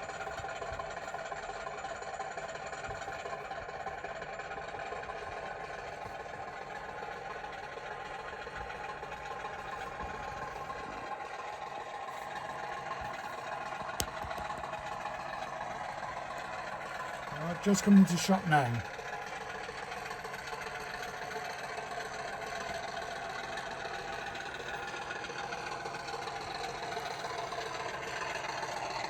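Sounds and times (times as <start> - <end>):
diesel engine drone through speaker: 0.0 - 19.2.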